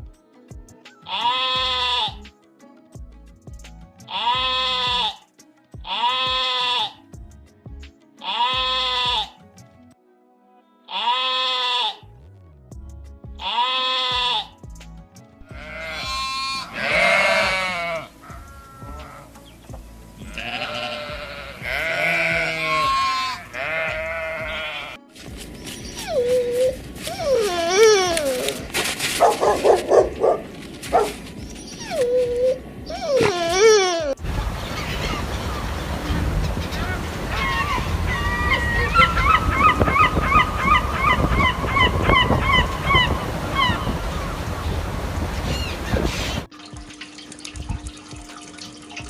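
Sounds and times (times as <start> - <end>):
sheep bleating: 1.1 - 2.2, 4.1 - 5.2, 5.8 - 7.0, 8.2 - 9.4, 10.9 - 12.1, 13.4 - 14.5, 15.4 - 19.4, 20.2 - 25.1
bird calling: 16.1 - 46.5.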